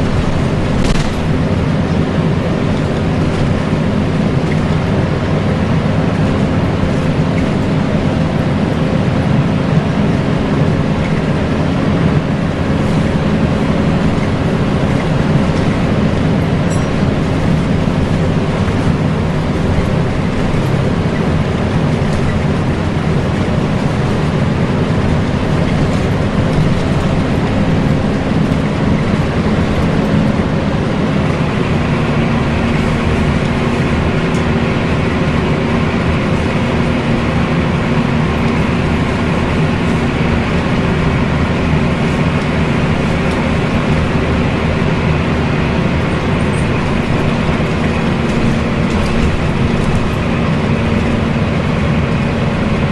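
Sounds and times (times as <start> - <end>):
bus diesel engine: 0.0 - 52.9
engine cooling fan rushing: 0.0 - 52.9
road noise: 0.0 - 52.9.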